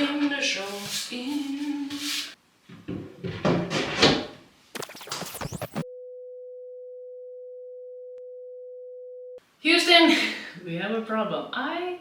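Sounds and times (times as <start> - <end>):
electronic beep tone: 4.8 - 5.9.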